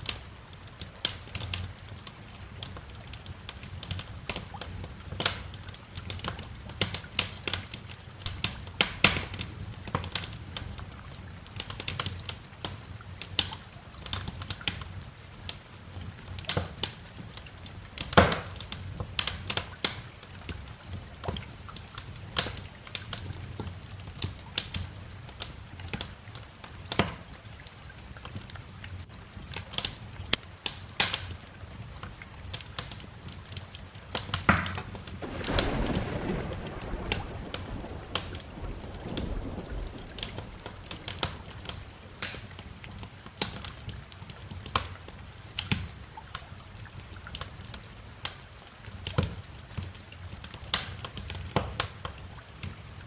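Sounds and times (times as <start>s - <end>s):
wood fire crackling: 0.0s - 28.6s, 29.4s - 52.8s
rain hiss: 0.0s - 53.0s
distant thunder rolling: 35.2s - 43.0s.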